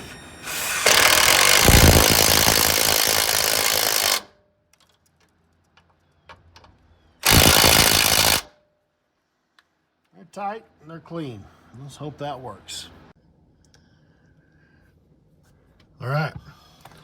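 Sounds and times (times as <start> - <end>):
impact wrench hammering: 0.8 - 4.3, 7.2 - 8.4.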